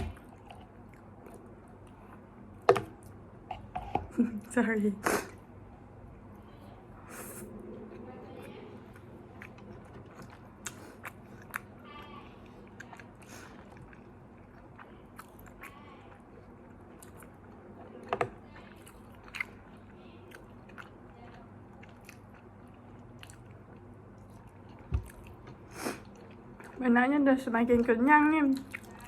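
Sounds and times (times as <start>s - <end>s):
steady low hum: 0.0s - 29.0s
crunchy chewing: 7.8s - 26.8s, 28.5s - 29.0s.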